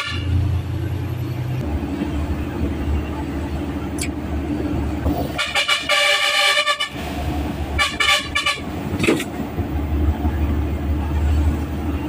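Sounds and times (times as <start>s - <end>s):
vehicle horn honking: 0.0s - 0.4s, 5.4s - 7.0s, 7.8s - 8.7s
diesel truck engine rumble: 0.0s - 12.0s.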